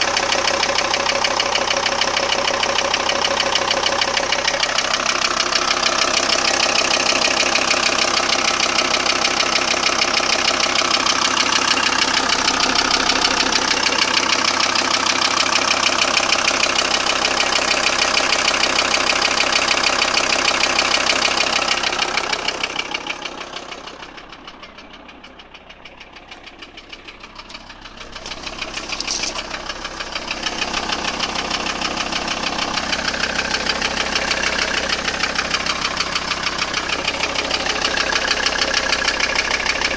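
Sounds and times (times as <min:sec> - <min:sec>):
diesel engine idling with rattle: 0:00.0 - 0:39.9.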